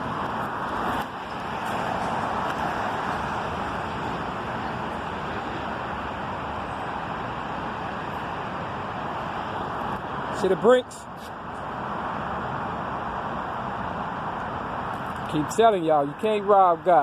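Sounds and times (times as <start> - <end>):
road traffic rush: 0.0 - 17.0.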